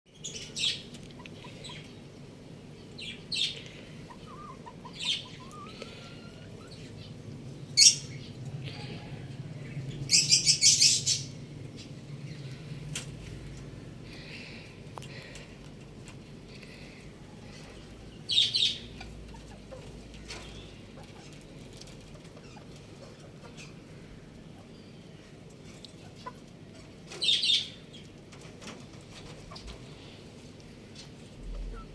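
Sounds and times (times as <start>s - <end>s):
birds chirping: 0.1s - 31.9s
chicken squawk: 4.0s - 6.9s.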